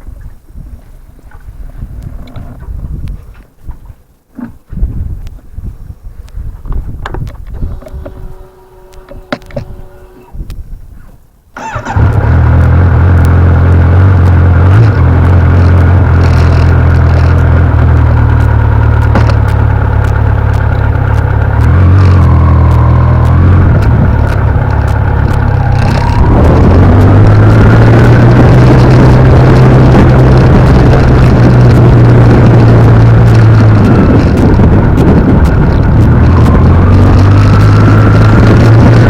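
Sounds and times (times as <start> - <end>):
motorcycle engine starting and idling: 7.3 - 10.5, 11.6 - 39.0.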